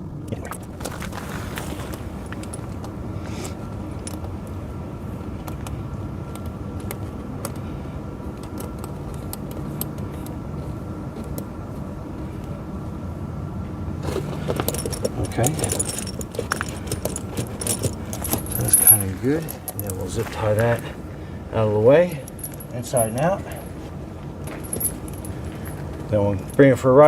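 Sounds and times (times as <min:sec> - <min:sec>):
engine humming: 0:00.0 - 0:27.0
metallic clinks of chains: 0:14.5 - 0:20.9, 0:22.2 - 0:23.7, 0:24.5 - 0:26.6.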